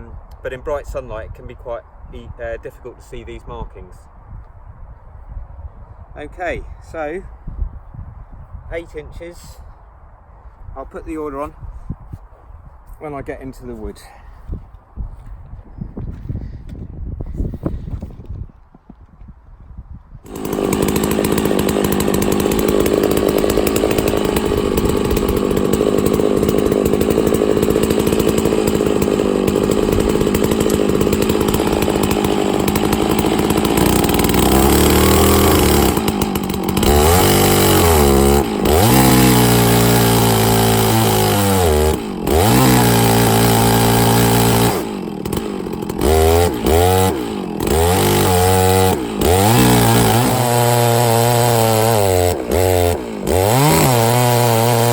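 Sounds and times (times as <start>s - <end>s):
chainsaw running under load: 20.2s - 54.9s.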